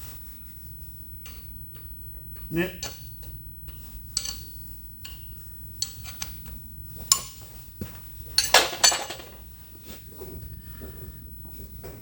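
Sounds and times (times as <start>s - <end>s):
spanner clinking on steel: 4.2s - 6.3s, 8.4s - 9.4s.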